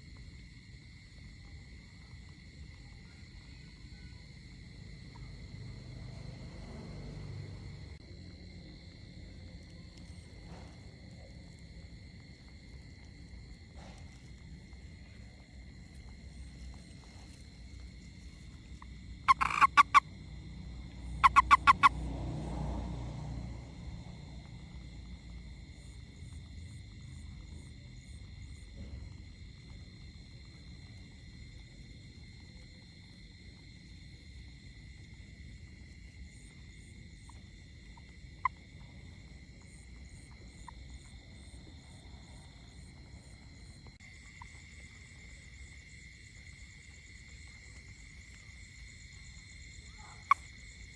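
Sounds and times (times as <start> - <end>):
frog pulsed calls: 15.2 - 22.6, 35.6 - 43.0, 44.1 - 50.9
faint high chirps: 19.3 - 20.0, 21.2 - 21.9.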